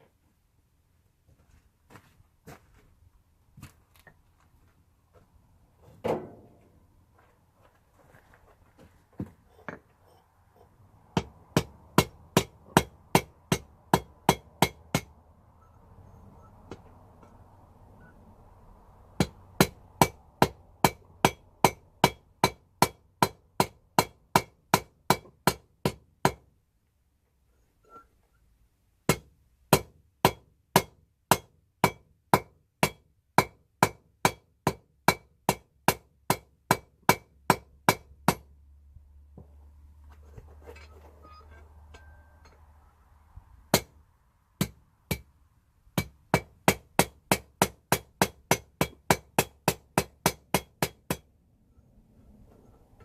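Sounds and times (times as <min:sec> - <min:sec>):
hammer striking metal on anvil: 0:11.2 - 0:15.1.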